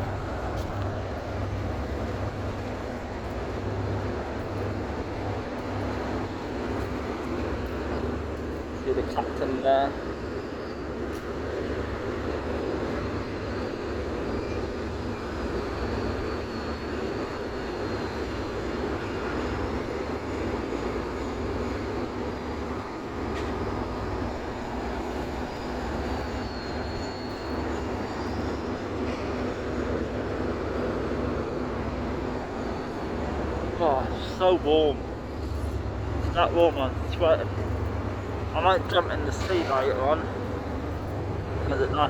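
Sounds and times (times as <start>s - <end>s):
ship engines rumbling: 0.0s - 42.0s
faint high wavering whistle: 24.6s - 30.2s.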